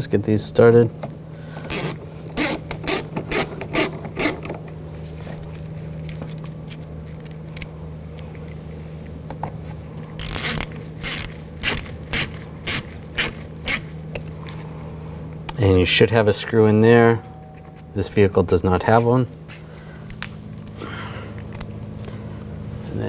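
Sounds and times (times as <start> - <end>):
hand ratchet clicking: 1.7 - 4.5, 10.2 - 13.9.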